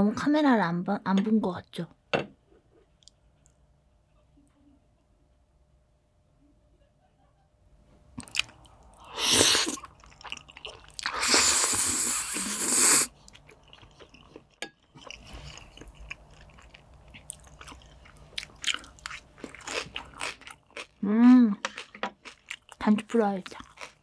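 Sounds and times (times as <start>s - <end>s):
quiet chewing: 2.6s - 3.6s, 8.2s - 11.3s, 12.2s - 24.0s.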